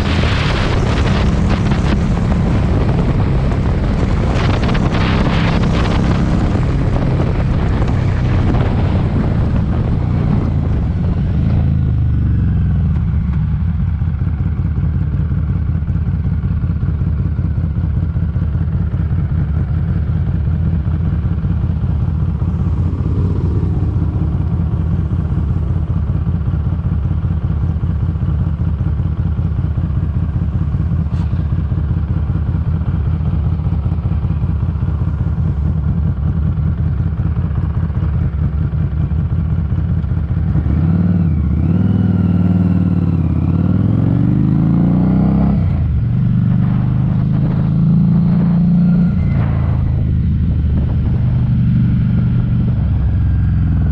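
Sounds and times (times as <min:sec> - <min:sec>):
wind noise on microphone: 0:00.0 - 0:12.4, 0:21.0 - 0:28.0, 0:44.2 - 0:53.9
motorcycle engine accelerating: 0:00.0 - 0:53.9.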